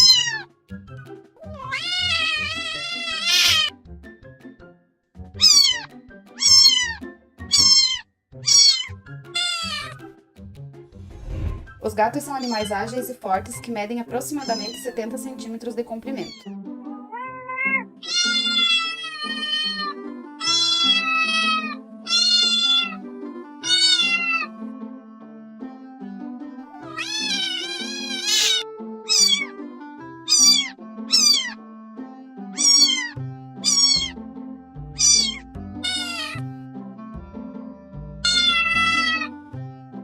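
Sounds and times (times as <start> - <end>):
cat meowing: 0.0 - 0.5, 1.4 - 3.7, 5.4 - 10.0, 12.4 - 12.7, 14.4 - 14.9, 16.2 - 24.5, 26.8 - 31.6, 32.6 - 34.2, 34.9 - 36.4, 38.2 - 39.4
soft background music: 0.0 - 40.0.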